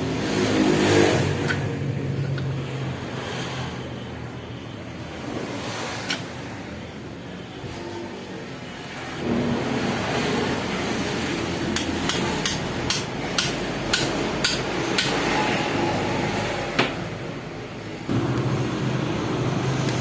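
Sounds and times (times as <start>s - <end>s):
steady background noise: 0.0s - 20.0s
hammer tapping on metal: 11.7s - 15.2s.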